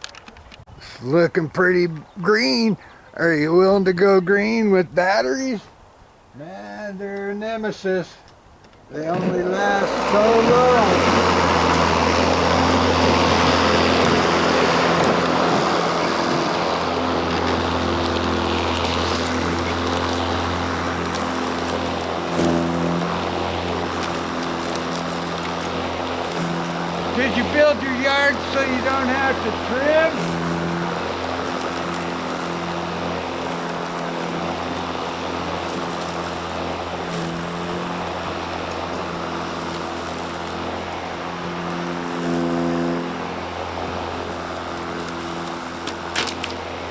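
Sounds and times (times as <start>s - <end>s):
steady tones: 9.0s - 39.2s
electric lawn mower running: 9.0s - 46.9s
spinning blade rush: 9.1s - 38.3s.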